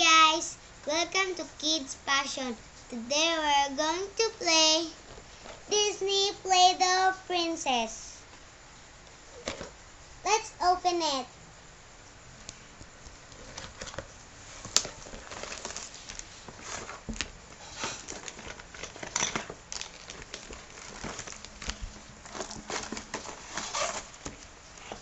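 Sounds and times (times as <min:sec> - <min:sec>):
packaging crinkling and rustling: 0:13.3 - 0:25.0.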